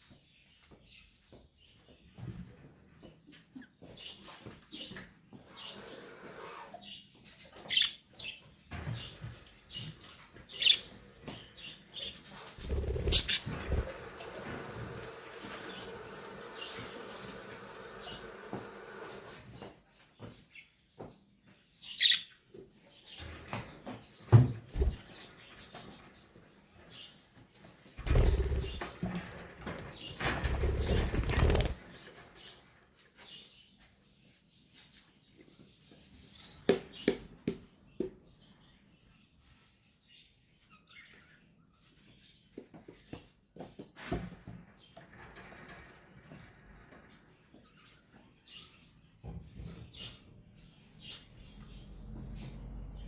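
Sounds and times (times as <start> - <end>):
pet birds chirping: 0.0 - 43.6, 47.4 - 53.0
knocks and rustling: 23.1 - 33.4
loud rustling: 29.6 - 32.1.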